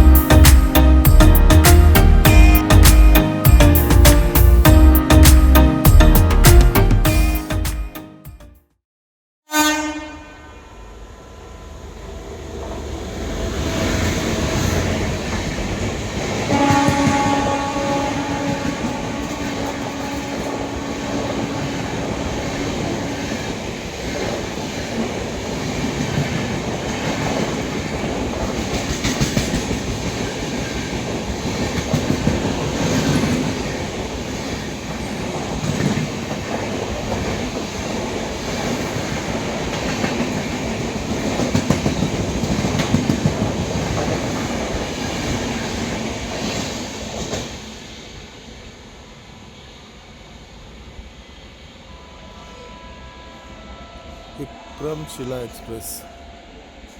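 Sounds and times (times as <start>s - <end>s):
train horn blast: 9.5s - 10.8s, 16.5s - 22.3s, 51.9s - 56.7s.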